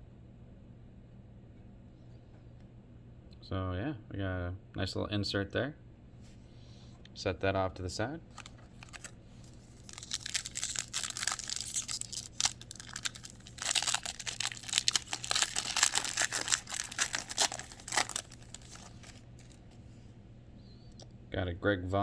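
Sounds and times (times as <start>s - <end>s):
wrapper being torn and crinkled: 8.3s - 19.7s.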